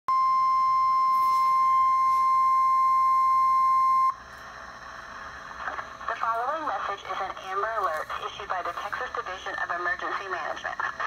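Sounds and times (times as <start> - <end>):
steady alarm tone: 0.1 - 4.2
faint radio hiss: 4.4 - 11.0.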